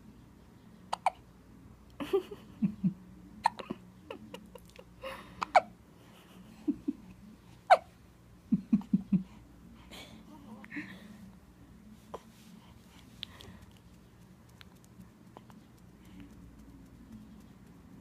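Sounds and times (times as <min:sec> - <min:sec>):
baby hiccuping: 0:00.9 - 0:01.2, 0:05.4 - 0:05.7, 0:07.7 - 0:07.9.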